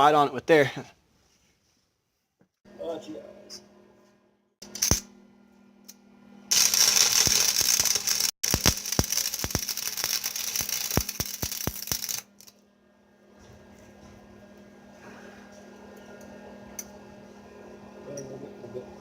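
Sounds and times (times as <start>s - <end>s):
welding arc crackling and hissing: 6.5s - 12.5s.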